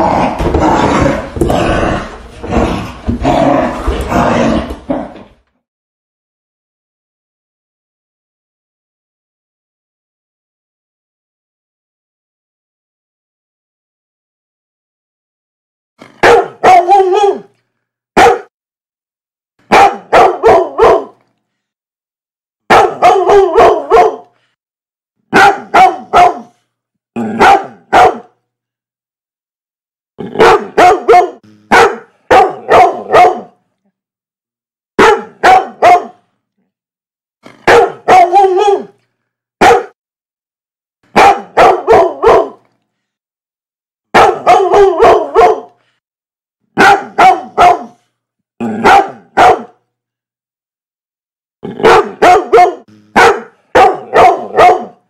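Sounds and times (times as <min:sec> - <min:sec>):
dog barking: 0:16.1 - 0:17.5, 0:18.2 - 0:18.5, 0:19.7 - 0:21.2, 0:22.7 - 0:24.3, 0:25.3 - 0:26.6, 0:27.3 - 0:28.4, 0:30.3 - 0:33.6, 0:35.0 - 0:36.2, 0:37.6 - 0:39.0, 0:39.6 - 0:40.0, 0:41.1 - 0:42.6, 0:44.1 - 0:45.8, 0:46.8 - 0:48.0, 0:48.6 - 0:49.8, 0:51.7 - 0:55.0.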